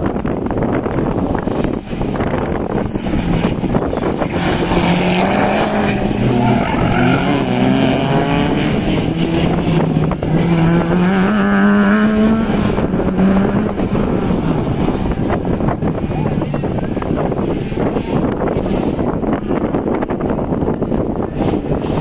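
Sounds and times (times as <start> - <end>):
racing car engine revving: 0.5 - 22.0.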